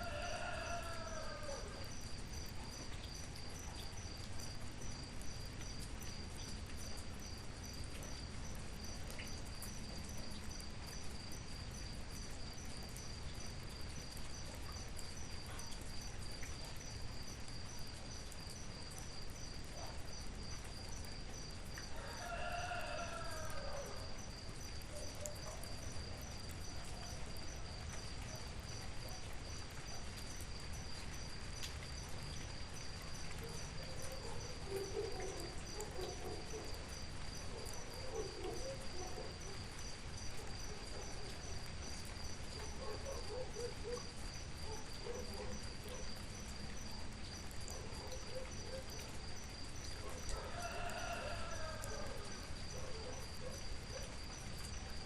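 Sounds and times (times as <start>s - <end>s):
rooster crowing: 0.0s - 1.9s, 21.9s - 24.1s, 50.3s - 52.5s
cricket trilling: 0.0s - 55.0s
steady rain hiss: 0.0s - 55.0s.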